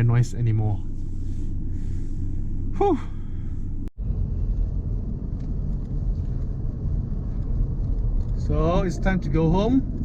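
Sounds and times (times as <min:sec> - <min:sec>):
car engine rumbling: 0:00.0 - 0:10.0
person sighing: 0:02.8 - 0:03.4.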